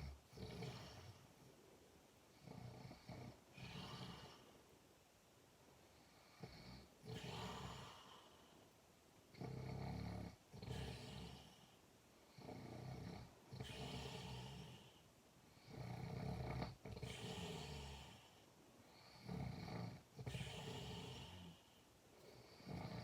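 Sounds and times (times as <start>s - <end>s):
person snoring: 0.0s - 1.2s, 2.4s - 4.5s, 6.3s - 8.4s, 9.4s - 11.7s, 12.4s - 15.0s, 15.6s - 18.4s, 19.0s - 23.0s.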